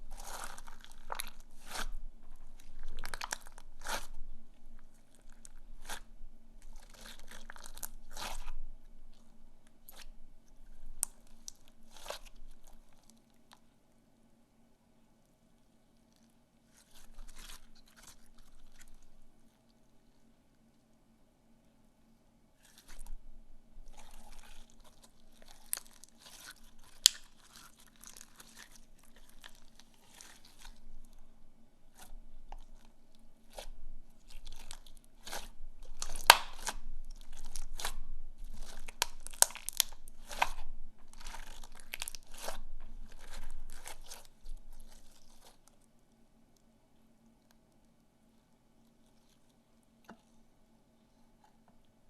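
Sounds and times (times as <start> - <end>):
slime squished by hand: 0.1 - 4.2, 5.0 - 8.6, 9.8 - 10.2, 10.9 - 13.6, 23.8 - 31.2, 31.9 - 45.9.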